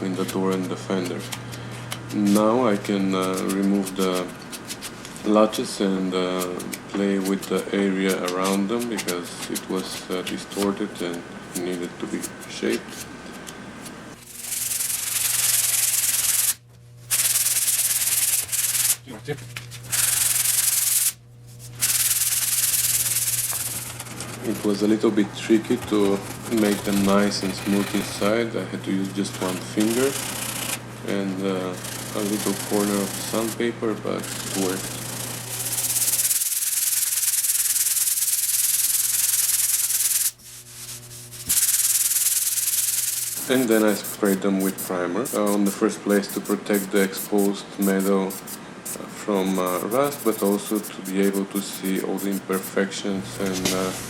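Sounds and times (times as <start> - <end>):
sanding steel panels: 14.2 - 19.0, 19.8 - 28.4, 29.1 - 30.8, 31.5 - 52.8.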